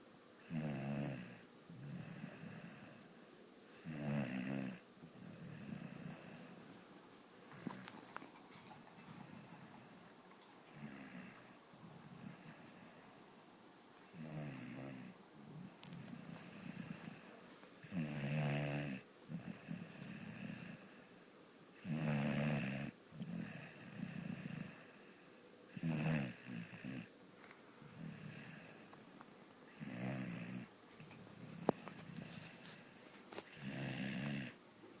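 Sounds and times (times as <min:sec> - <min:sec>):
dog snoring: 0:00.4 - 0:03.1, 0:03.8 - 0:06.7, 0:07.6 - 0:13.1, 0:14.1 - 0:27.1, 0:27.8 - 0:29.1, 0:29.7 - 0:34.6
dog breathing: 0:07.5 - 0:13.2, 0:15.5 - 0:17.9, 0:31.0 - 0:34.0.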